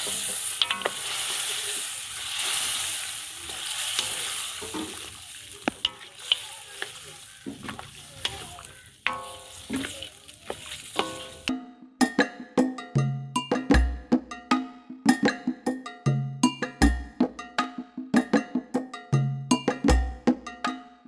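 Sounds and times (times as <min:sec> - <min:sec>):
food sizzling in a pot: 0:00.0 - 0:11.5
spoon clinking against pot: 0:00.0 - 0:11.5.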